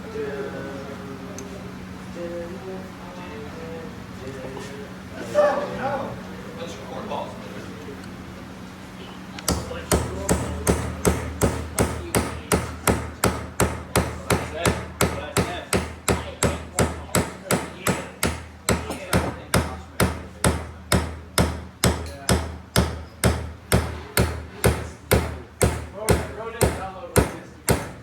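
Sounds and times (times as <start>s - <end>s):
hammer blows on metal: 9.5s - 28.0s.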